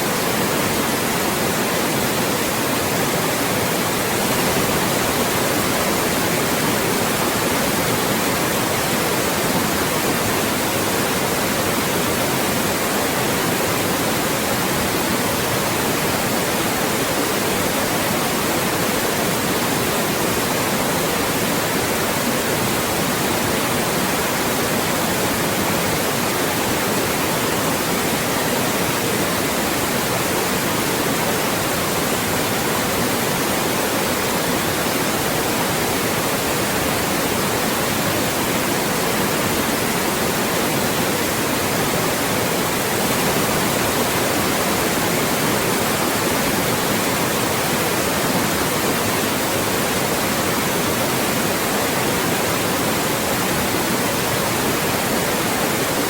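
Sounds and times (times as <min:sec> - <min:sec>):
loud white noise hiss: 0:00.0 - 0:56.0.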